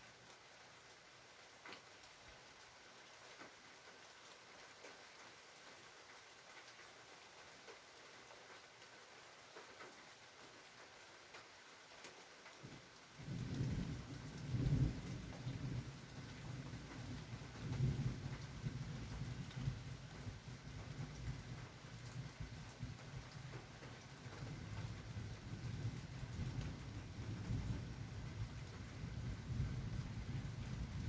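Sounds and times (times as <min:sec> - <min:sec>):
light rain: 0:00.0 - 0:31.0
rain drop ticks: 0:01.6 - 0:02.2, 0:08.6 - 0:31.0
thunder rumbling: 0:24.7 - 0:31.0.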